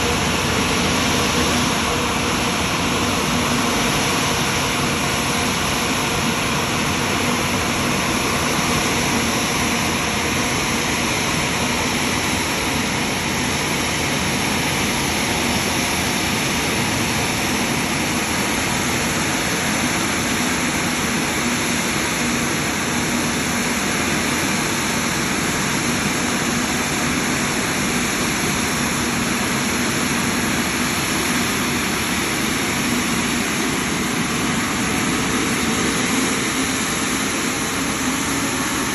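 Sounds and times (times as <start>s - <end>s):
jet engines running: 0.0s - 38.9s.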